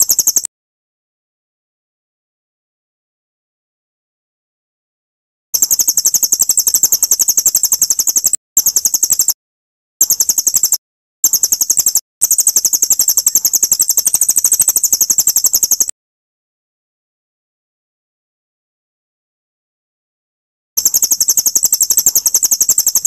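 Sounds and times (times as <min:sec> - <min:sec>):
songbird high-pitched rapid trill: 0:00.0 - 0:00.5, 0:05.6 - 0:09.4, 0:10.0 - 0:15.9, 0:20.8 - 0:23.0.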